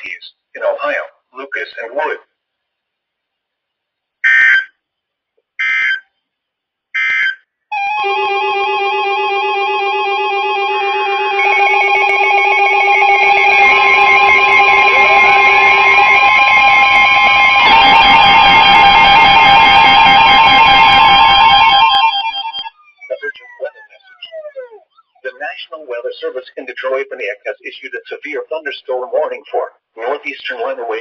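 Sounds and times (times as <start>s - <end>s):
layered sustained music tones: 7.7s - 24.7s
guitar-like sound: 7.8s - 24.8s
digital data tone bursts: 10.2s - 25.5s.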